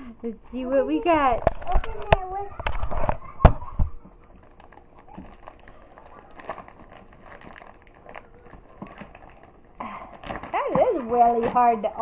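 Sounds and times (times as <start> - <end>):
plastic packaging crinkling: 1.0 - 12.0
small clicks of packaging: 4.4 - 10.6.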